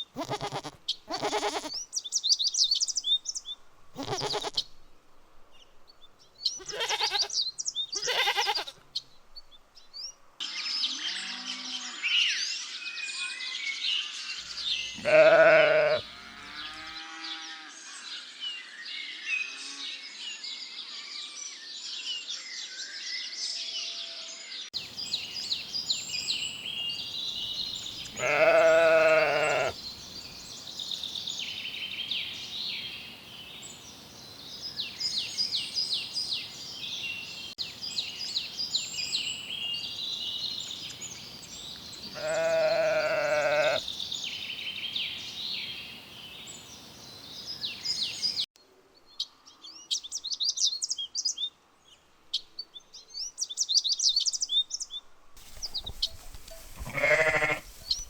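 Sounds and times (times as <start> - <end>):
sheep bleating: 0.0 - 1.8, 4.0 - 4.6, 6.6 - 8.8, 14.7 - 17.0, 28.0 - 29.8, 42.1 - 43.8, 56.6 - 57.8
small birds chirping: 0.0 - 4.8, 5.6 - 10.2, 14.4 - 16.9, 24.8 - 51.5, 52.3 - 58.0.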